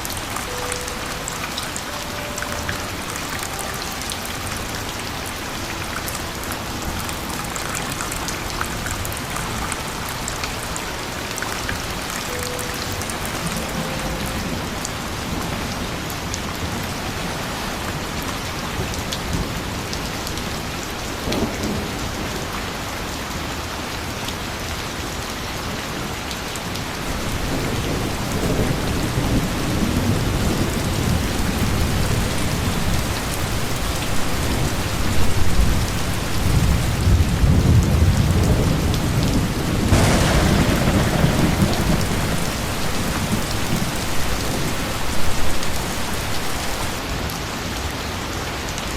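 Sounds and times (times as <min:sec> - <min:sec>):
steady rain falling: 0:00.0 - 0:48.9
low thunder rumbling: 0:27.0 - 0:47.0.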